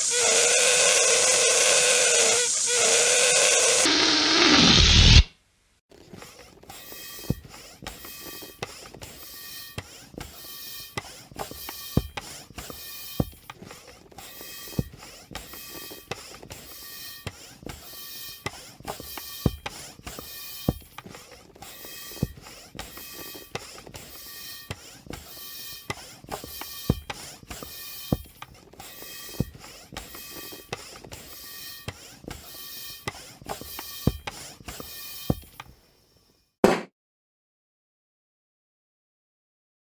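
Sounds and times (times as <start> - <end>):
high squeaky tone: 0.0 - 5.2
balloon pump strokes: 0.0 - 5.3, 5.9 - 36.8.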